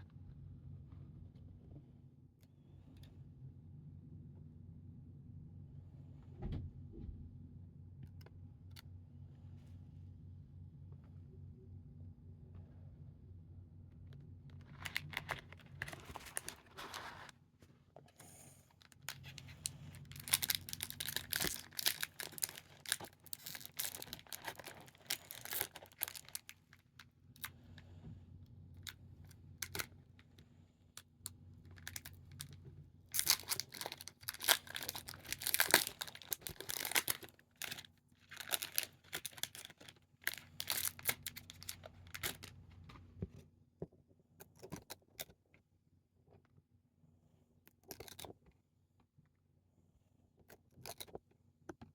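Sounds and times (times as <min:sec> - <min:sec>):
card pack wrappers tearing: 0:14.6 - 0:17.3, 0:18.8 - 0:26.6, 0:31.8 - 0:42.5.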